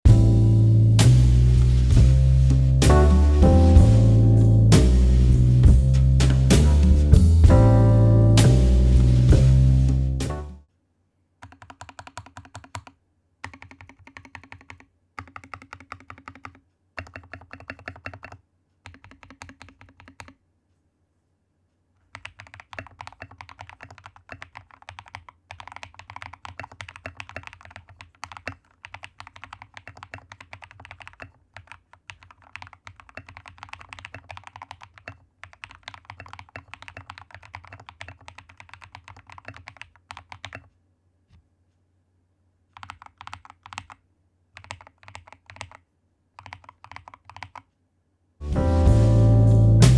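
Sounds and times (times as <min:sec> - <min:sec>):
typing on mechanical keyboard: 0:11.4 - 0:20.4, 0:22.1 - 0:40.7, 0:42.7 - 0:47.7.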